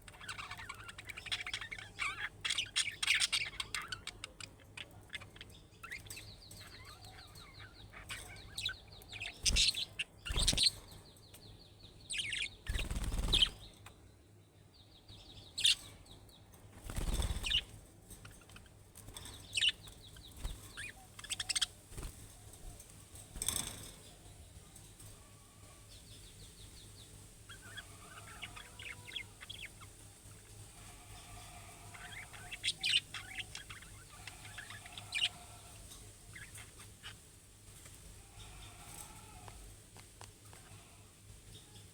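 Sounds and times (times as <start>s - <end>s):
budgerigars chirping and warbling: 0.0s - 10.9s, 12.1s - 13.6s, 15.4s - 16.0s, 16.9s - 22.2s, 27.5s - 37.2s.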